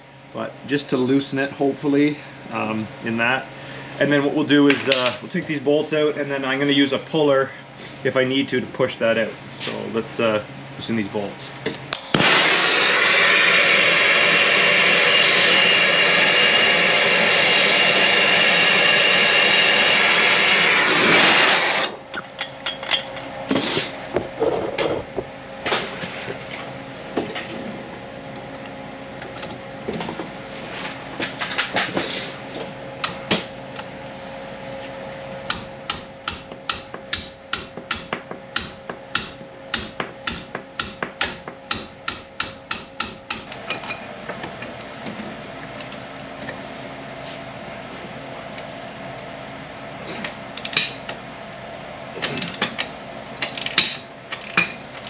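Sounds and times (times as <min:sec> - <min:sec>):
power tool running on bolts: 0:35.3 - 0:43.5
sharp metallic clicks and knocks: 0:35.5 - 0:43.6.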